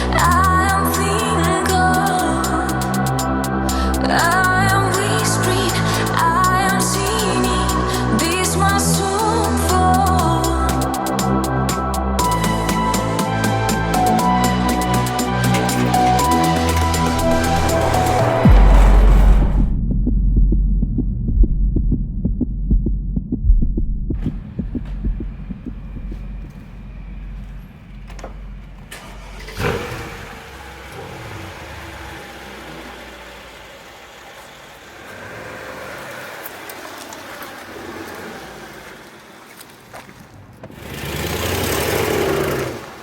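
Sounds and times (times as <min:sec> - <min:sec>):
car engine running: 0:00.0 - 0:19.9, 0:21.1 - 0:39.6.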